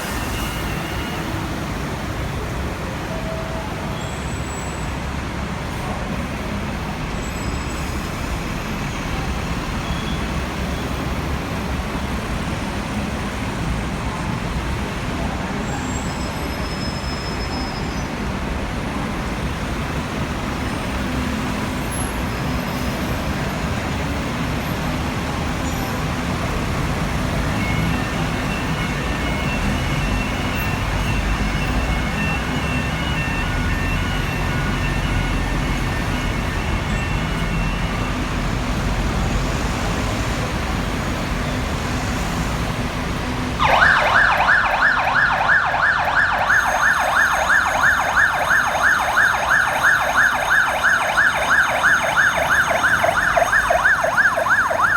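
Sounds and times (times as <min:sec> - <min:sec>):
diesel fire engines rumbling: 0:00.0 - 0:54.9
electronic siren rising and falling: 0:43.6 - 0:54.9.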